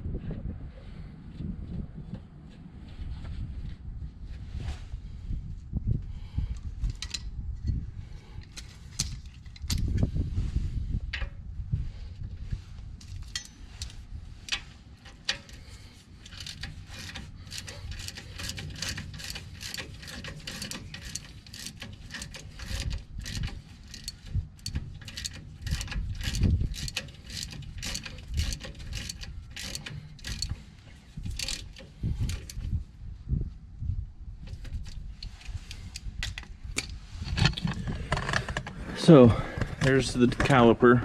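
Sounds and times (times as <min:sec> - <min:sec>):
ratchet wrench clicking: 0:13.0 - 0:30.7, 0:31.3 - 0:32.6
metal parts clinking: 0:13.0 - 0:32.7.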